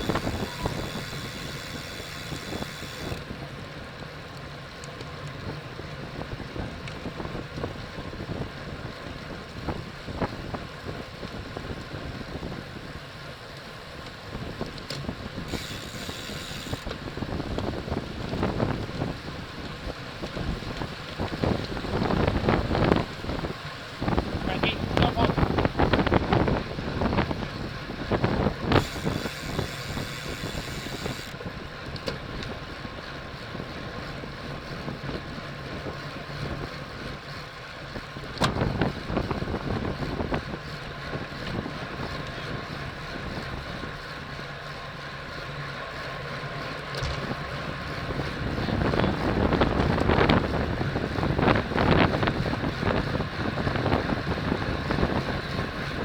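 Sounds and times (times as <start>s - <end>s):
wind on microphone: 0.0s - 3.3s, 14.3s - 31.7s, 47.0s - 56.0s
road noise: 0.0s - 56.0s.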